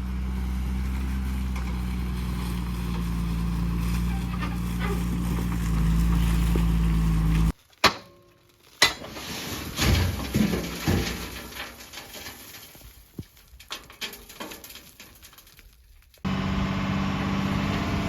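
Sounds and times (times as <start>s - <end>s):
heavy diesel engine running: 0.0s - 7.5s, 16.3s - 18.0s.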